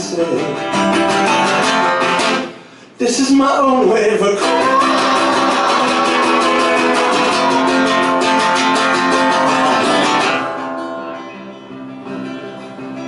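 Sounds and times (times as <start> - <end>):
acoustic guitar strumming: 0.0 - 2.9, 4.2 - 13.0.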